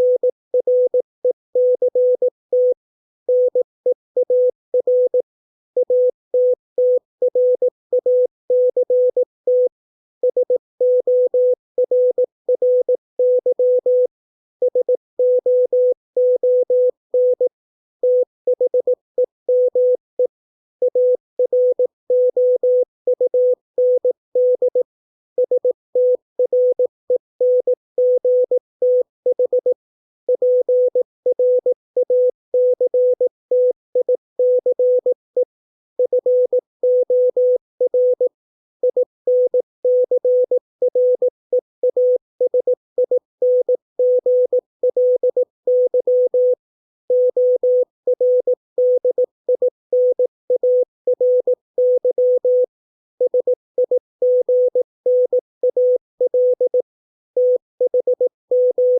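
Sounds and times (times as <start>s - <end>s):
morse code tone: 57.4s - 58.9s.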